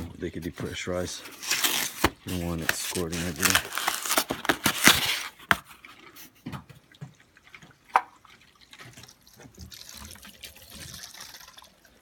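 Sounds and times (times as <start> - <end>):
water dripping from plumbing: 6.4 - 12.0.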